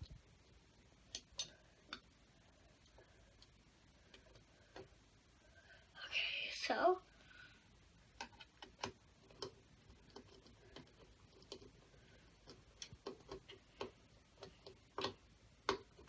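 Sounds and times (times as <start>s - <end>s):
faint clicks and taps of small parts: 1.0s - 2.2s, 2.8s - 5.0s, 8.1s - 16.0s.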